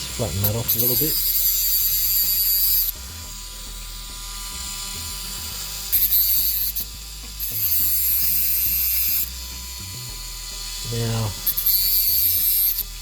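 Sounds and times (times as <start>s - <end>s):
rotary tool grinding: 0.0s - 13.0s.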